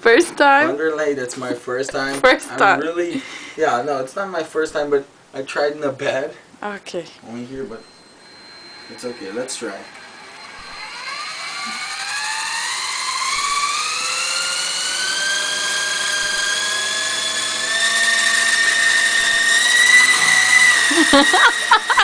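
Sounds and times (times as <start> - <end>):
toy helicopter motor whine: 8.2 - 22.0.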